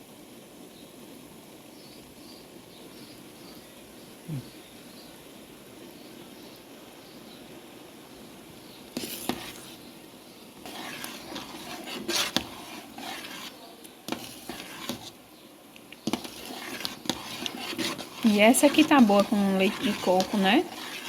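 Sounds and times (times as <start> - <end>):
spoon clinking and scraping pot: 9.0 - 9.8, 10.6 - 15.2, 16.0 - 21.0.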